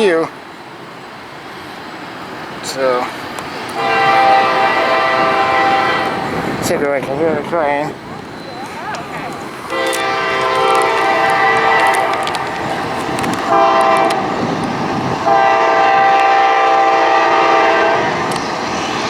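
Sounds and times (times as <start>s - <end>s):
train horn blasts: 3.8s - 6.6s, 9.3s - 14.5s, 15.2s - 18.2s.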